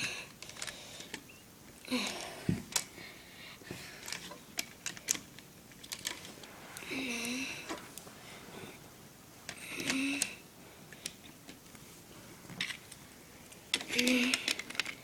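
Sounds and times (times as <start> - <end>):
plastic bricks clicking: 4.0 - 6.3, 13.7 - 15.0.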